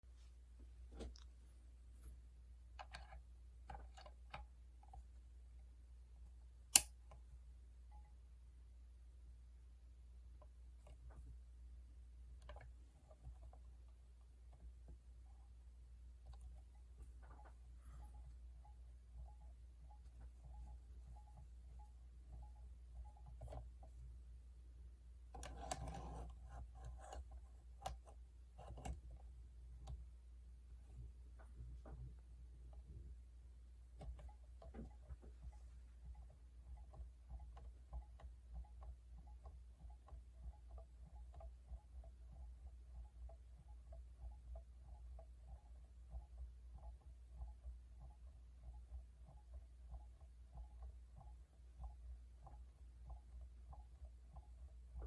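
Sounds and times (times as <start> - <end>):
faint low hum: 0.0 - 55.0
light clicks and taps: 2.0 - 5.2, 12.3 - 15.5, 33.8 - 55.0.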